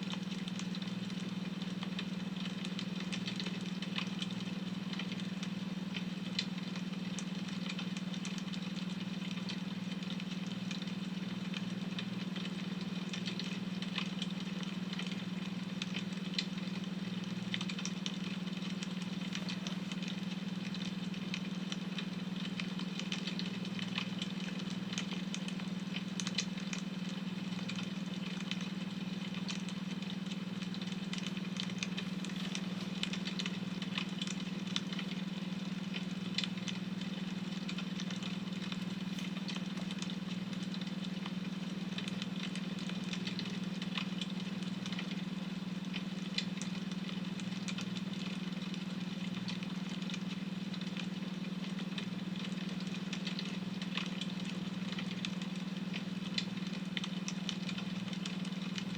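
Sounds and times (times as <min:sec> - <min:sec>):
wood fire crackling: 0:29.6 - 0:36.8.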